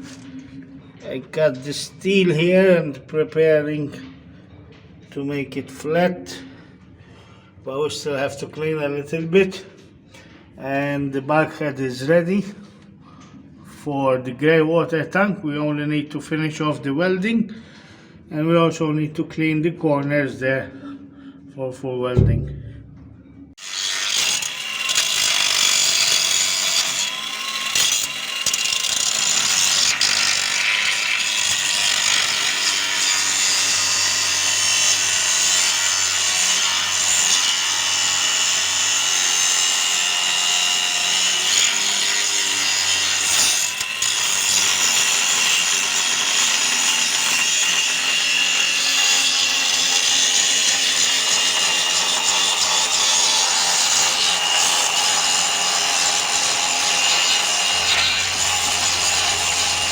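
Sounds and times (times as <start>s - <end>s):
angle grinder grinding steel: 23.6s - 59.9s.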